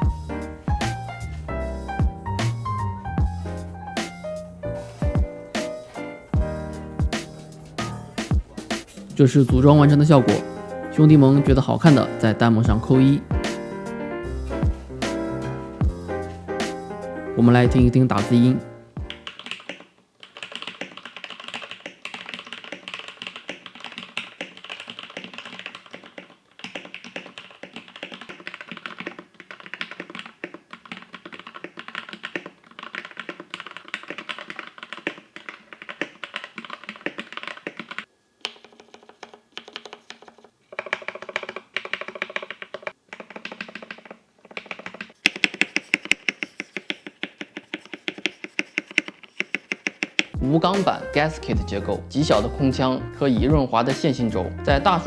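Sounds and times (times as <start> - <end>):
mechanical keyboard typing: 19.1 - 50.4.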